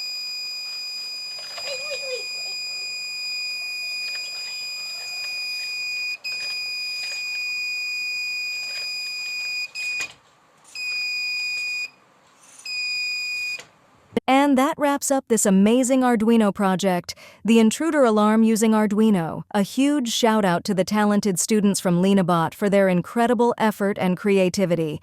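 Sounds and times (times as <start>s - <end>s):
high-pitched buzzer alarm: 0.0s - 10.1s, 10.8s - 12.0s, 12.6s - 13.6s.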